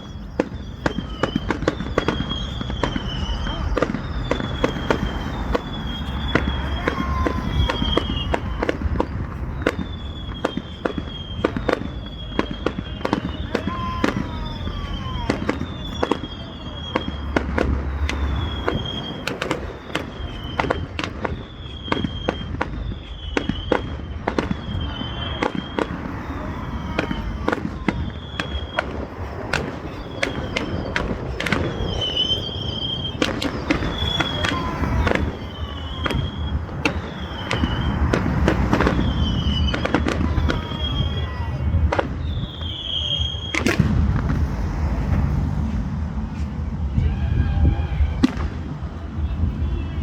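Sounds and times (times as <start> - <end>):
fireworks cracking and banging: 0.0 - 50.0
high firework whistle: 0.0 - 50.0.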